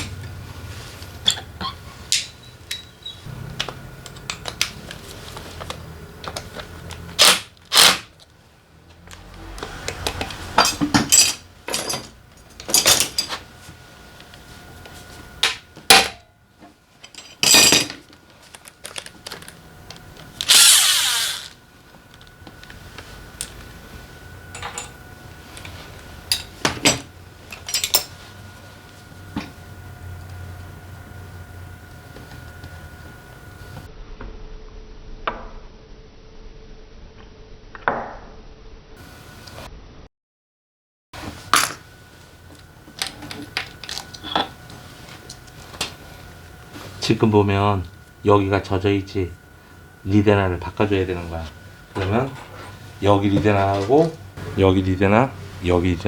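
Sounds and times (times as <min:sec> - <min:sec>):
power tool bursts: 0:07.2 - 0:08.1, 0:20.4 - 0:21.6.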